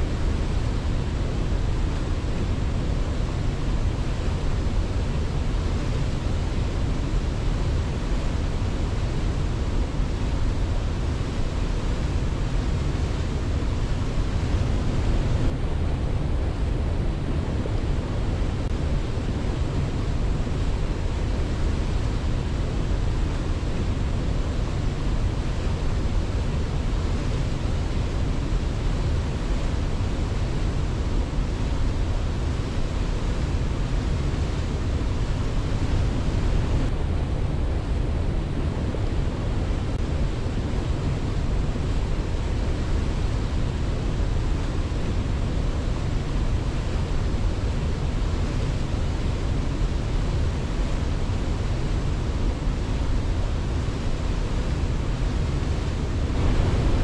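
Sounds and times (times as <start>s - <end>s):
waterfall rushing: 56.3s - 57.0s.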